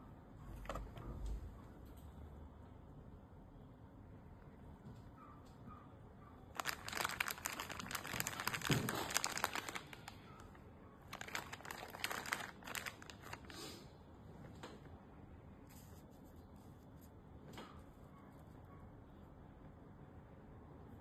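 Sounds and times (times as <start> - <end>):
crinkling rustling handling noise: 6.6 - 13.7.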